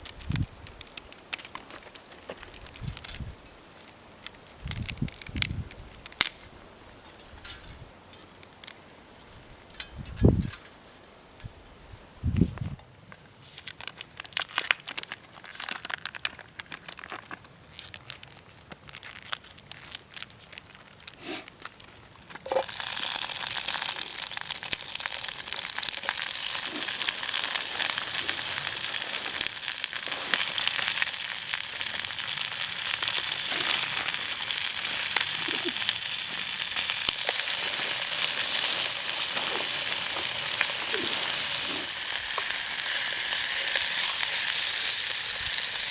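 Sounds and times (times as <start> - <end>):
crinkling handling sounds: 13.1 - 45.8
food sizzling in a hot pan: 22.5 - 45.9.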